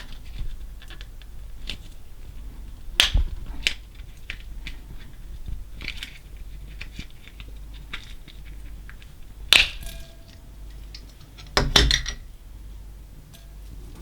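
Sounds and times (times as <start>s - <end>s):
hard objects clinking: 5.8s - 12.3s.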